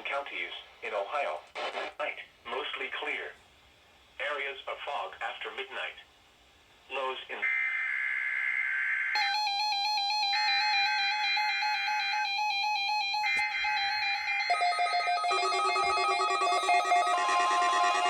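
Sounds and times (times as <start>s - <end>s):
electronic beeping alert melody: 13.5s - 18.0s
screechy digital data bursts: 15.3s - 18.0s.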